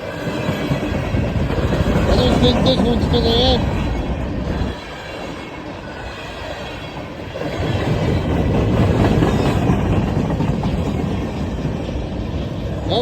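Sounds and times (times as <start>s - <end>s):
freight train passing: 0.0s - 13.0s.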